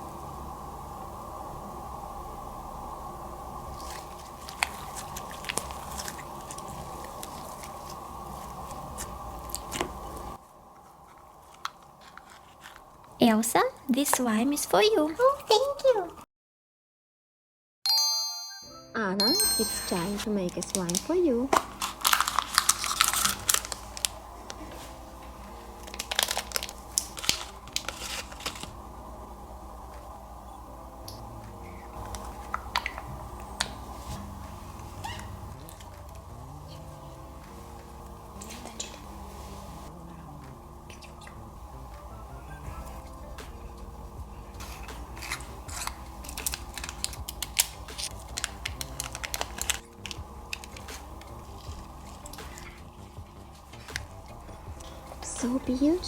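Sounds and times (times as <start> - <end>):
plastic packaging crinkling: 3.7 - 13.2, 19.9 - 30.1, 42.8 - 56.0
soft background music: 17.9 - 56.0
plastic pieces clicking: 44.9 - 51.0.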